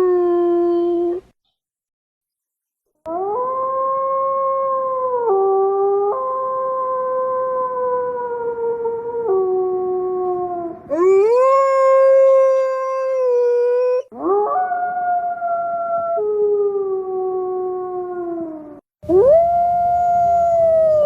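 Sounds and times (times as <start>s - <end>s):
wolf howling: 3.1s - 21.0s.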